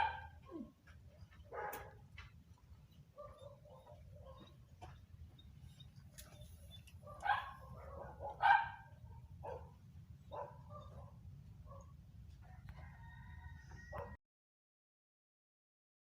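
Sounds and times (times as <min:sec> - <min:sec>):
rooster crowing: 0:12.4 - 0:14.2.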